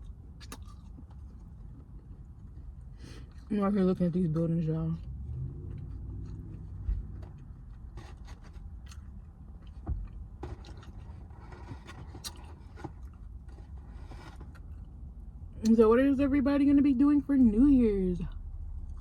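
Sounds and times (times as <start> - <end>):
person chewing food: 0.0 - 3.5, 5.1 - 14.9
low rumble: 3.7 - 8.0, 14.7 - 19.0.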